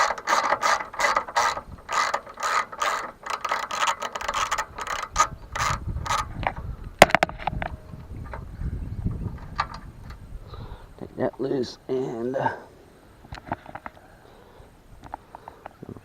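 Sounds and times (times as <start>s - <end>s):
ratchet wrench clicking: 0.0s - 6.3s.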